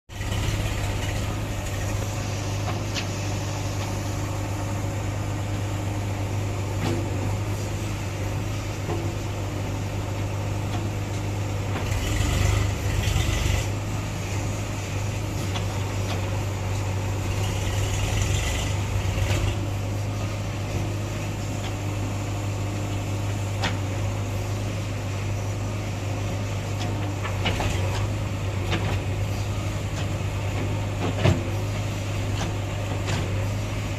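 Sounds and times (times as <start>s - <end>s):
diesel engine revving: 0.1s - 8.4s, 11.4s - 20.7s.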